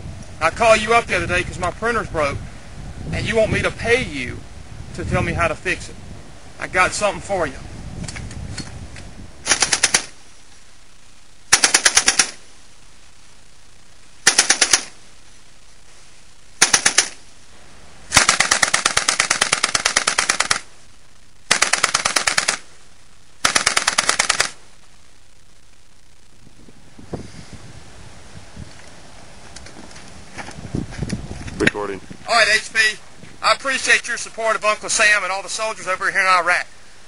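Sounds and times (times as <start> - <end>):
machine gun bursts: 9.5 - 10.2, 11.5 - 12.4, 14.2 - 15.0, 16.6 - 17.2, 18.1 - 20.7, 21.5 - 22.7, 23.4 - 24.6.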